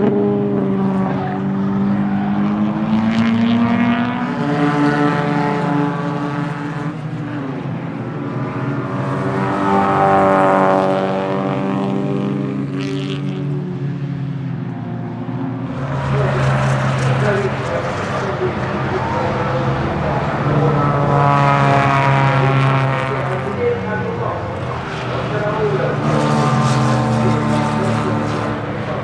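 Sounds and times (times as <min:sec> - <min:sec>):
race car engine revving: 0:00.0 - 0:29.0.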